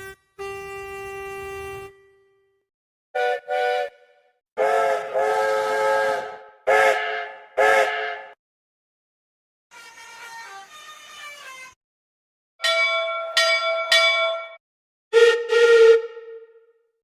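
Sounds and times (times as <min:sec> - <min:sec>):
steam locomotive whistle: 0:00.0 - 0:02.0, 0:03.2 - 0:08.4, 0:15.1 - 0:16.6.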